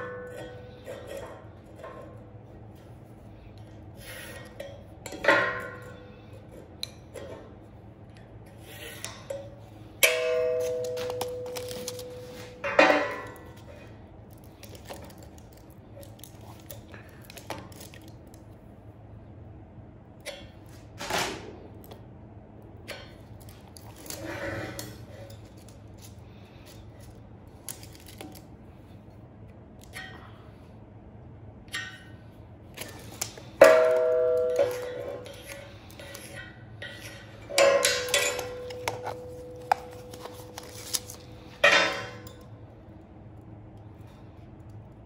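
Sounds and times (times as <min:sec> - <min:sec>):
ringing metal clank: 0:10.0 - 0:13.5, 0:33.6 - 0:35.7.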